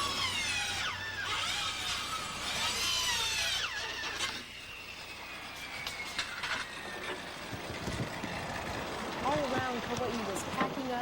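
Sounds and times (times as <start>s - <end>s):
power drill whining: 0.0s - 8.4s.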